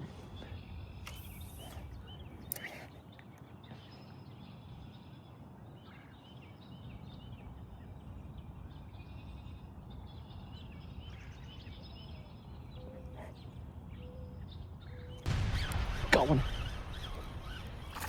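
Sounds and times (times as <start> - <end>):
small birds chirping: 0.0 - 18.0
steady low rumble: 15.3 - 18.0.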